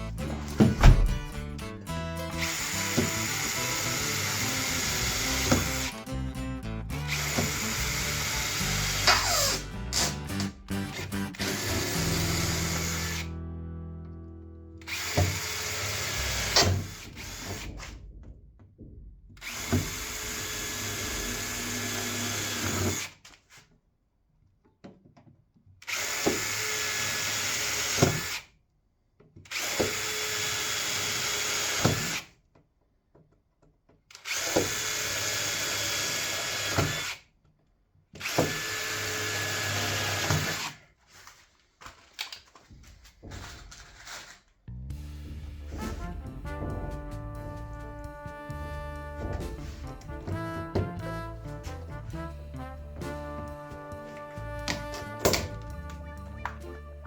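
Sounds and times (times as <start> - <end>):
handheld power tool bursts: 2.2 - 6.0, 7.0 - 13.3, 14.8 - 18.0, 19.4 - 23.3, 25.8 - 28.5, 29.5 - 32.3, 34.1 - 37.3, 38.2 - 40.9.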